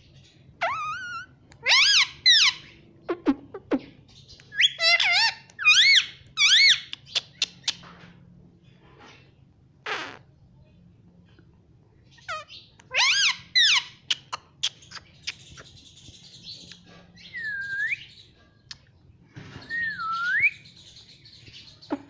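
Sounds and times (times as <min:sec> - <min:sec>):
parrot whistled calls: 0:19.6 - 0:20.7.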